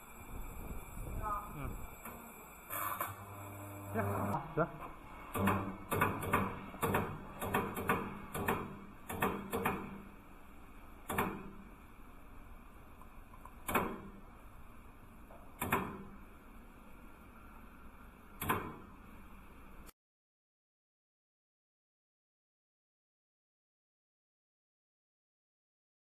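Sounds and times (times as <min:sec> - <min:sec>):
welding machine clacking: 0:05.3 - 0:10.0.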